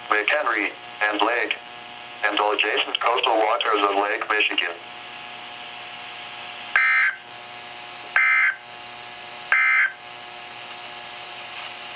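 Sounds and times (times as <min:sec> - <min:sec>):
faint radio hiss: 0:00.0 - 0:06.7, 0:10.5 - 0:11.9
digital data tone bursts: 0:06.8 - 0:07.2, 0:08.2 - 0:08.6, 0:09.5 - 0:10.0.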